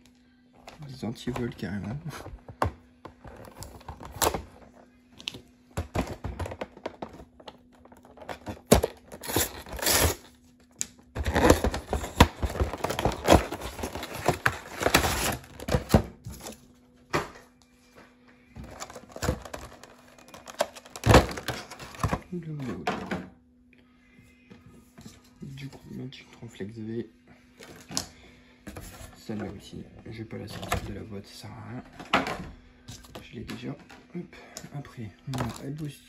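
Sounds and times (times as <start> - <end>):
tape tearing off cardboard: 8.7 - 10.3
plastic packaging crinkling: 11.1 - 16.5.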